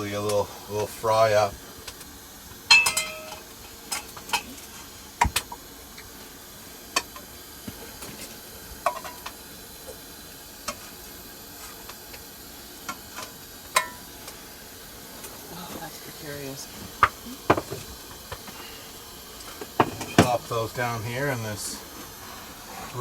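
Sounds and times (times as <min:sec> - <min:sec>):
vegetables sizzling in frying pan: 0:00.0 - 0:23.0
metal clink: 0:02.7 - 0:03.5.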